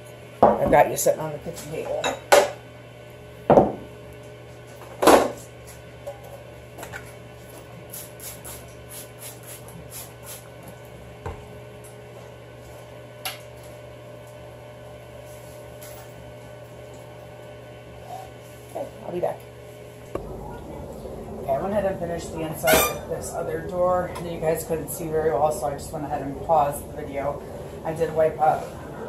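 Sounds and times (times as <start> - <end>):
steady low hum: 0.0 - 29.0
knocks in refrigerator door: 3.5 - 3.8.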